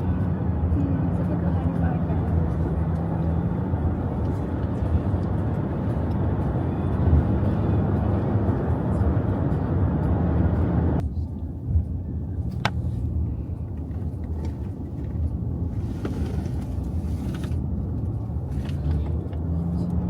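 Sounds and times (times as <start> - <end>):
car road and engine rumble: 0.0 - 20.0.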